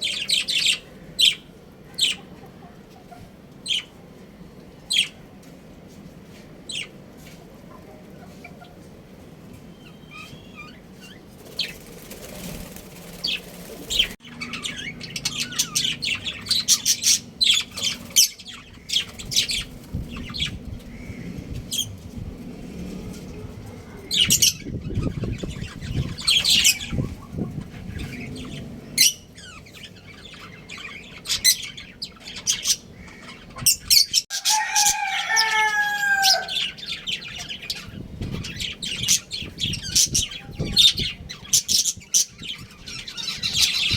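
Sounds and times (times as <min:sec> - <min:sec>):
budgerigars chirping and chattering: 0:00.0 - 0:02.4, 0:09.7 - 0:22.0, 0:24.0 - 0:43.9.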